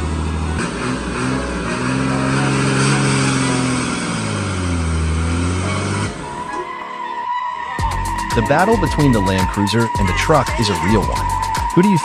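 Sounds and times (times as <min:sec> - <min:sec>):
vehicle engine revving: 0:00.0 - 0:06.4.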